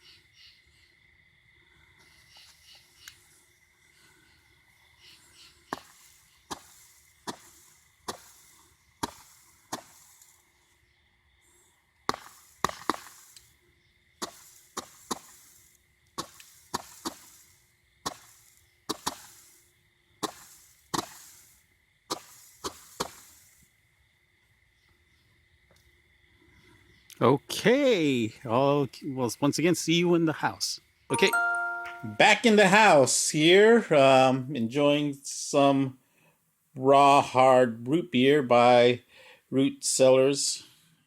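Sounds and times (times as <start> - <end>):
firework cake shots popping: 5.7 - 10.4, 12.0 - 13.6, 14.2 - 23.6.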